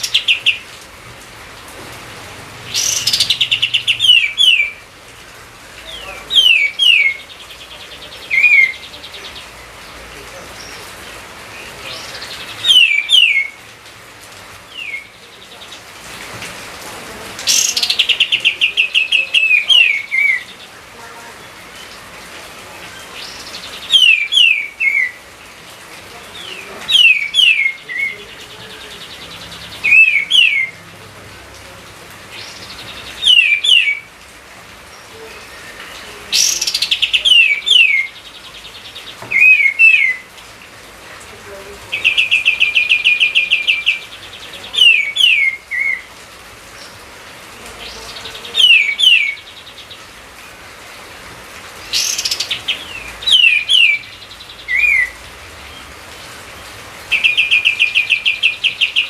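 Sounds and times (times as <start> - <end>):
songbird whistling: 12.6 - 13.6, 33.2 - 34.1, 39.3 - 40.2, 54.7 - 55.2.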